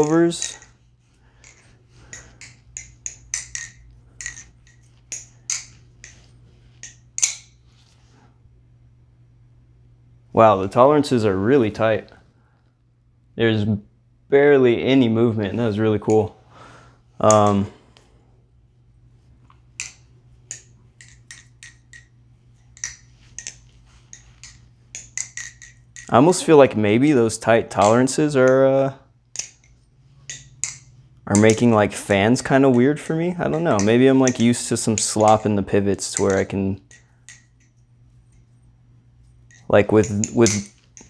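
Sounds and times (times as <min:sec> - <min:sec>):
metal knife handles clicking: 0:00.0 - 0:00.7, 0:01.4 - 0:07.6, 0:17.2 - 0:17.6, 0:19.8 - 0:26.5, 0:27.7 - 0:28.6, 0:29.4 - 0:31.8, 0:32.4 - 0:38.5, 0:39.5 - 0:41.0
low steady hum: 0:00.0 - 0:41.0.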